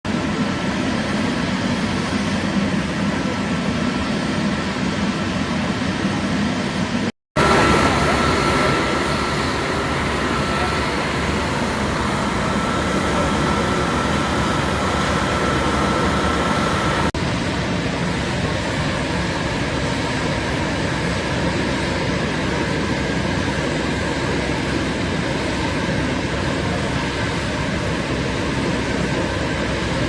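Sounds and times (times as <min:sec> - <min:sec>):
foundry machinery noise: 0:07.4 - 0:17.1
faint steady whine: 0:07.4 - 0:30.0.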